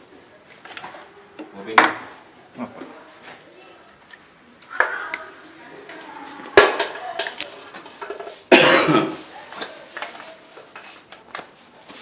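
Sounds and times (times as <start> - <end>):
person coughing loudly: 8.5 - 9.2.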